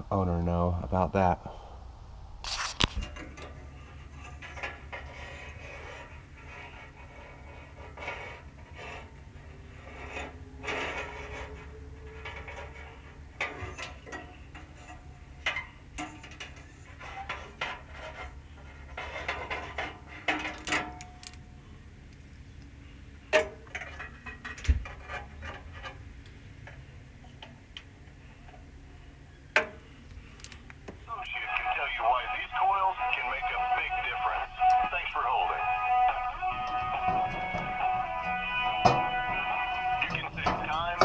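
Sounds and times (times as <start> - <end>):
steady low hum: 0.0 - 41.0.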